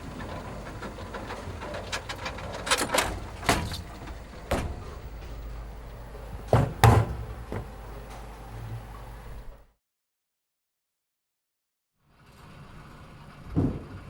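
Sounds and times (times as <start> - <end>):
steady low hum: 0.0 - 9.7
sharp knocks: 6.5 - 7.8.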